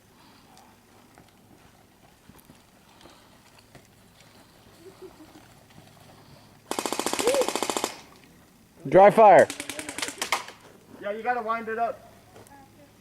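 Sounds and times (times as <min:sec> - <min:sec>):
airsoft gun full-auto rattle: 0:06.7 - 0:08.1, 0:09.4 - 0:10.6.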